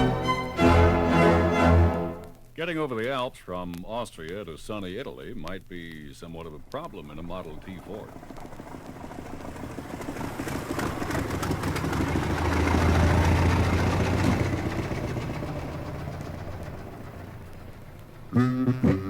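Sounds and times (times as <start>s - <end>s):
old car engine passing: 7.6s - 19.0s.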